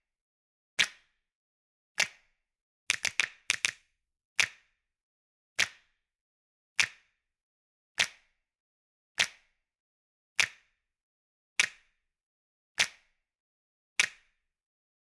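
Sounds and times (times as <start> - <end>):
finger snaps: 2.9 - 3.8, 8.0 - 8.2.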